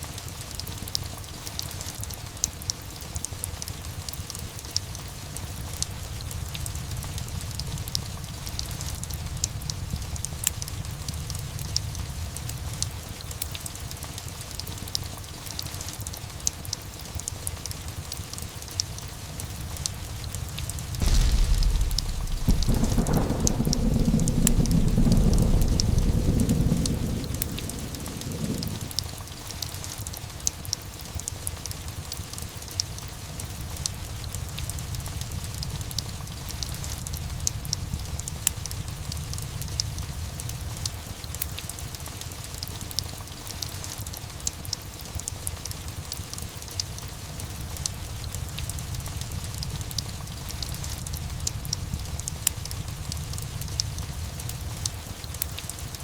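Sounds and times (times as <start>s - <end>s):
steady rain: 0.0s - 56.0s
fireplace crackling: 18.0s - 31.0s
thunder rumbling: 20.2s - 29.4s.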